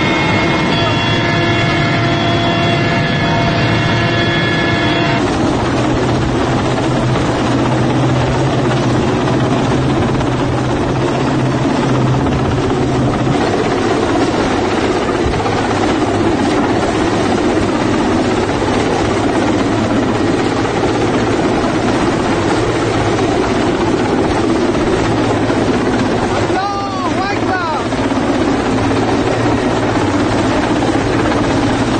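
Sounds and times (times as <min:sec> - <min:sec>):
high pitched tone: 0:00.0 - 0:05.2
helicopter rotors and engine: 0:00.0 - 0:31.9
low hum: 0:00.0 - 0:31.9.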